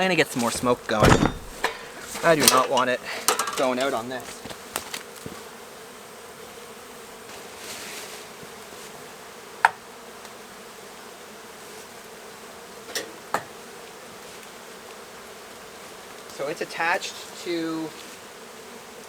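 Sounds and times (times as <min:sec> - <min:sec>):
bee colony buzzing: 0:00.0 - 0:19.0
sharp knocks: 0:00.6 - 0:02.8.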